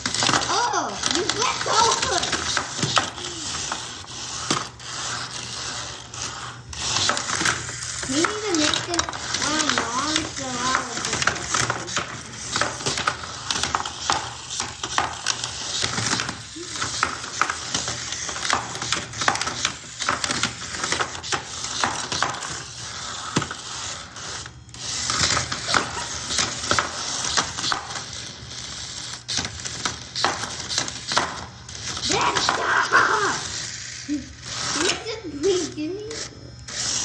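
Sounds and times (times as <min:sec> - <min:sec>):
toy robots clattering: 0:00.0 - 0:37.0.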